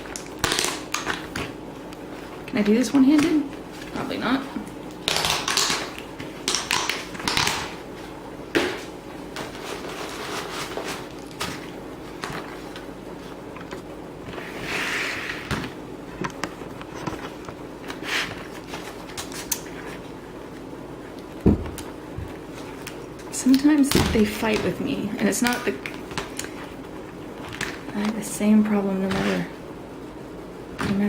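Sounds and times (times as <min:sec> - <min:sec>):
plastic and paper rustling: 0:07.0 - 0:14.7.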